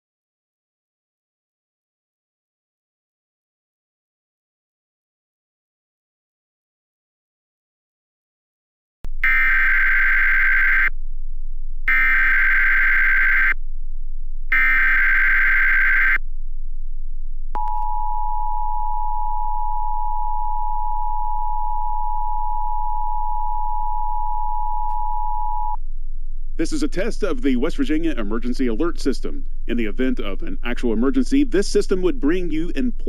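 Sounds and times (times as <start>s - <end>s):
digital data screech bursts: 9.2s - 10.9s, 11.9s - 13.6s, 14.5s - 16.2s
two-tone attention signal: 17.6s - 25.8s.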